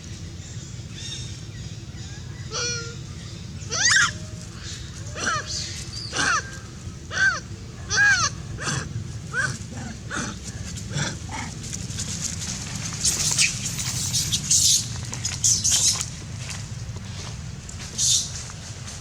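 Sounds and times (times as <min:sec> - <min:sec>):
steady low hum: 0:00.0 - 0:19.0
faint monkey squeaks: 0:13.0 - 0:16.0.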